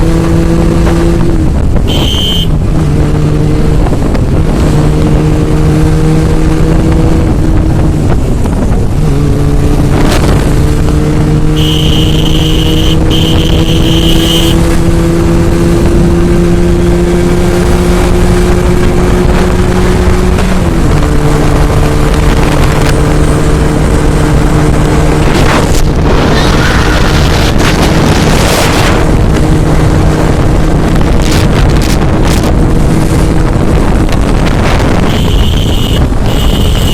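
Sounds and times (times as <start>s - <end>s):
motorcycle engine at speed: 0.0s - 36.9s
wind noise on microphone: 0.0s - 36.9s
horn: 11.5s - 14.6s.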